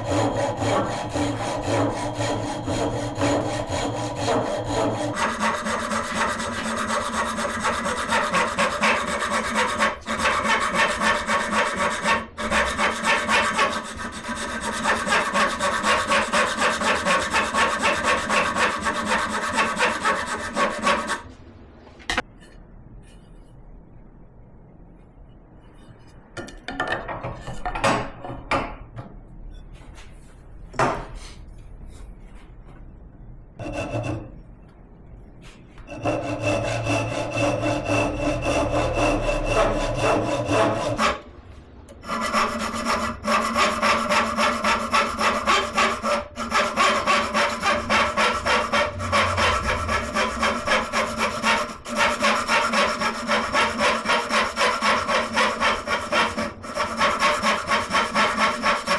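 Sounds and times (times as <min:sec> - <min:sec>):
handsaw cutting wood: 0:00.0 - 0:21.3, 0:36.0 - 0:41.2, 0:42.0 - 0:58.9.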